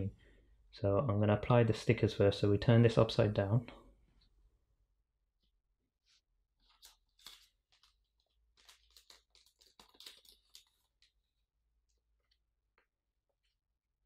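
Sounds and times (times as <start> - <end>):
screen protector rustling and crinkling: 5.4 - 14.0.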